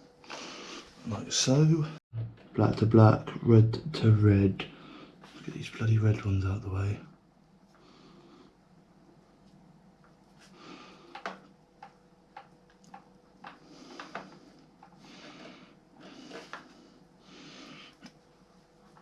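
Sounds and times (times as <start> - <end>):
faint steady hum: 0.0 - 19.0
noisy breaths: 0.2 - 1.1, 4.6 - 5.6, 7.7 - 8.8, 10.3 - 11.5, 13.4 - 19.0
clicks and rustles of wiring: 11.1 - 15.5.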